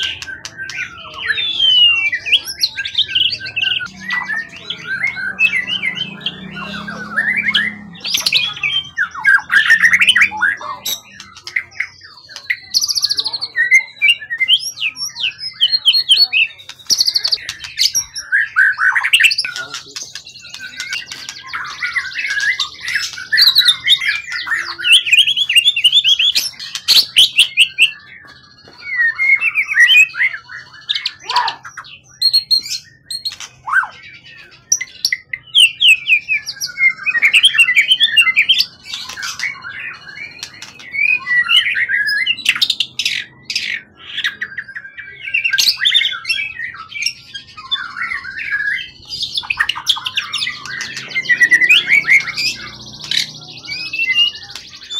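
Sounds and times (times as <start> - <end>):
songbird singing: 0.0 - 54.9.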